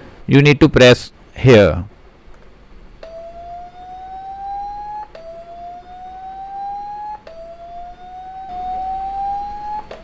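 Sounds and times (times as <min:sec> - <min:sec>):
rising tone from phone speaker: 0:03.0 - 0:10.0.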